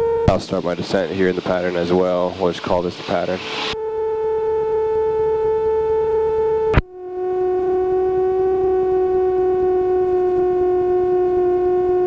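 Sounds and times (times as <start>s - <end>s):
steady humming tone: 0.0s - 12.0s.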